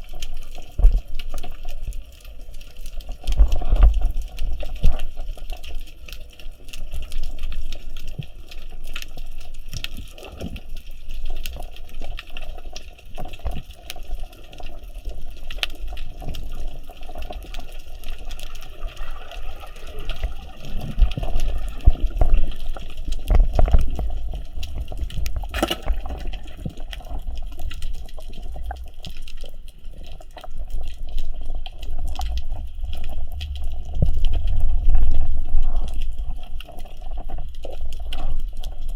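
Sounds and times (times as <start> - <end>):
underwater water movement: 0.0 - 38.9
low rumbling: 32.2 - 36.5.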